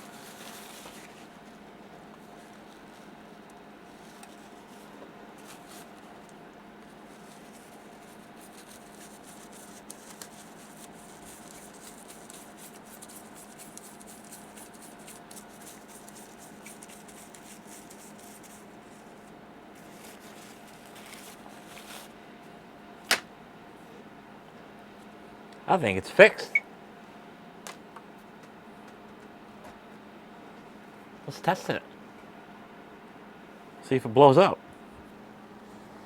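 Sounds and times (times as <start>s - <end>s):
faint scratching on circuit board: 7.1s - 19.1s.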